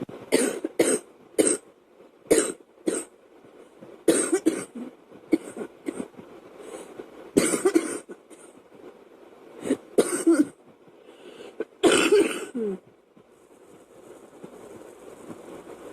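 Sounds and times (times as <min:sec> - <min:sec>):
girl coughing: 0:00.3 - 0:01.6, 0:04.1 - 0:06.1, 0:07.4 - 0:08.5, 0:09.6 - 0:10.6, 0:11.8 - 0:12.8.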